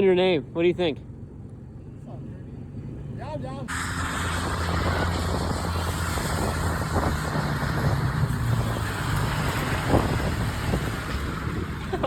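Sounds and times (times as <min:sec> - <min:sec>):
car engine running: 0:03.0 - 0:12.0
canoe dragged over pavement: 0:03.7 - 0:12.0.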